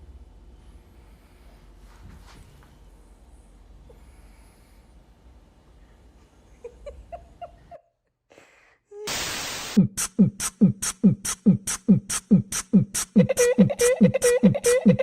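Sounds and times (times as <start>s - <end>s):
burst of hiss: 9.0s - 9.8s.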